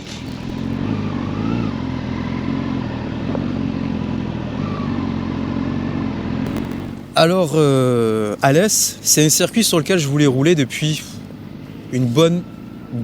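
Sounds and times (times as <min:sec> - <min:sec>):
motorcycle engine running: 0:00.0 - 0:07.2.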